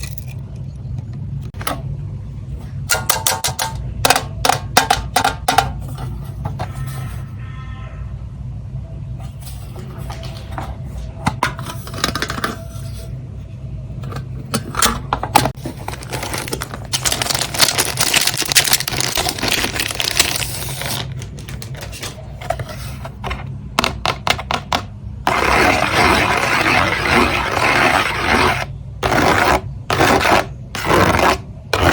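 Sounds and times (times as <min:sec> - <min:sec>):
packaging rustling: 0:15.6 - 0:22.6.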